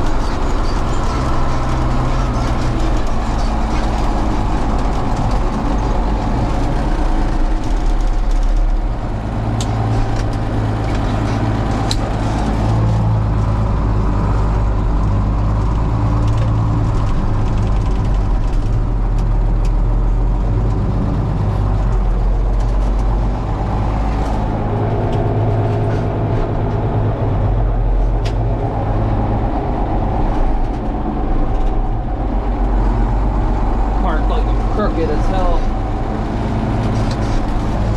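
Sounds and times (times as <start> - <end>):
light rattles and clicks: 0.0 - 13.7, 15.3 - 26.8
tractor engine running: 0.0 - 37.9.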